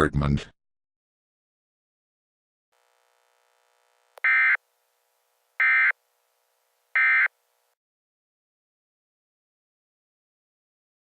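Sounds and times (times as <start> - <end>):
digital data tone bursts: 4.2 - 4.6, 5.6 - 6.0, 7.0 - 7.4.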